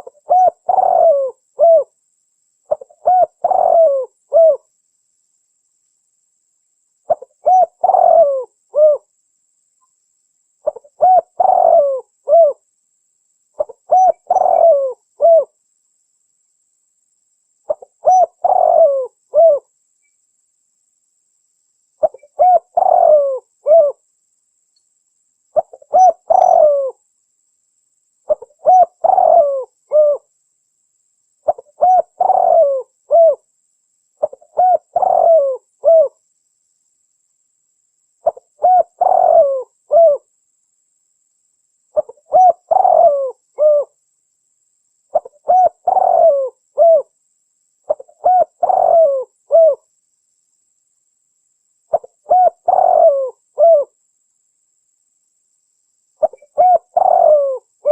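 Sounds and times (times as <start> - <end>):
dove cooing: 0.0 - 2.0, 2.7 - 4.7, 7.1 - 9.1, 10.6 - 12.6, 13.6 - 15.6, 17.7 - 19.7, 22.0 - 24.0, 25.6 - 27.0, 28.3 - 30.3, 31.4 - 33.4, 34.2 - 36.2, 38.2 - 40.3, 42.0 - 44.0, 45.1 - 47.1, 47.9 - 49.8, 51.9 - 54.0, 56.2 - 57.9.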